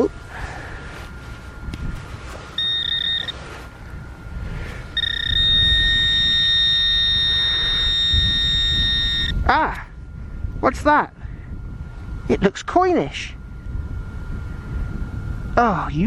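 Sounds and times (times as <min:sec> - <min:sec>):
metal detector tone: 0:00.0 - 0:04.0, 0:04.6 - 0:09.6.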